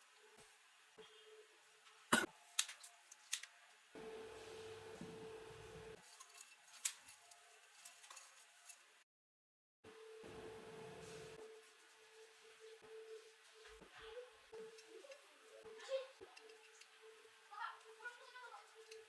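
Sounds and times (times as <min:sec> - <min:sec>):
small tools clicking and snipping: 0:02.5 - 0:03.6, 0:06.1 - 0:07.2.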